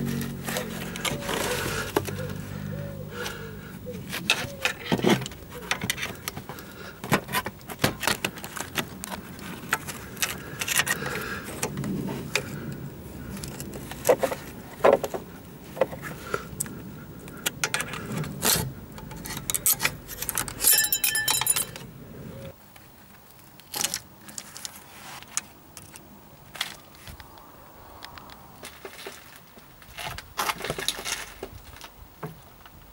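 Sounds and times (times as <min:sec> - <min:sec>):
metal tools clinking: 0:17.6 - 0:21.9
ringing metallic rattle: 0:19.0 - 0:22.3.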